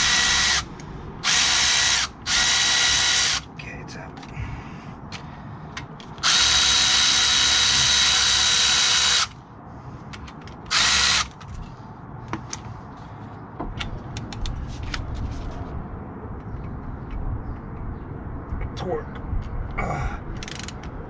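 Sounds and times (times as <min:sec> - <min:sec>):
cordless ratchet whining: 0:00.0 - 0:03.5, 0:06.2 - 0:09.4, 0:10.7 - 0:11.4.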